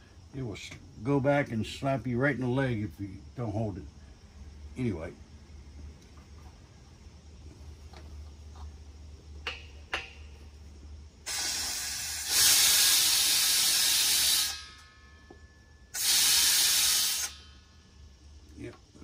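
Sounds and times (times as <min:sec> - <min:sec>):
compressed air hissing from drain: 0:11.2 - 0:14.7, 0:15.9 - 0:17.7.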